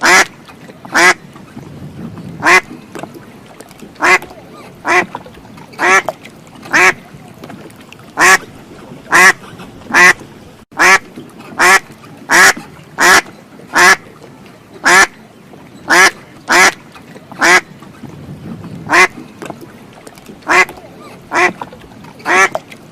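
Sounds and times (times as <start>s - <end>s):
duck quacking: 0.0s - 0.3s, 0.9s - 1.2s, 2.4s - 2.7s, 4.0s - 4.2s, 4.8s - 5.1s, 5.8s - 6.1s, 6.7s - 7.0s, 8.2s - 8.4s, 9.1s - 10.2s, 10.8s - 11.0s, 11.6s - 14.0s, 14.8s - 15.1s, 15.9s - 16.8s, 17.4s - 17.6s, 18.9s - 19.1s, 20.5s - 21.6s, 22.3s - 22.6s.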